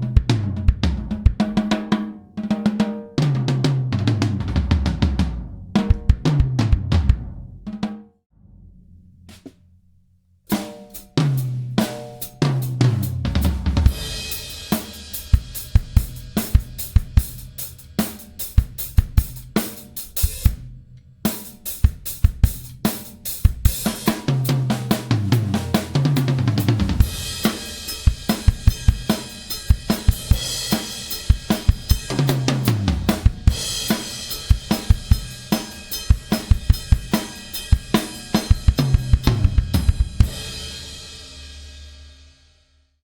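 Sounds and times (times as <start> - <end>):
drum kit groove: 0.0 - 9.7, 10.5 - 42.2
tom fill: 23.4 - 41.8.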